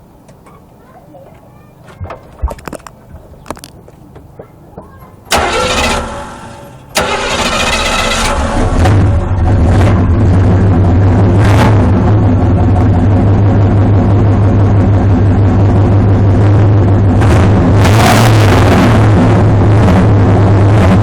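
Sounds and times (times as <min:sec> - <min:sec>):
car engine idling: 0:02.0 - 0:17.6.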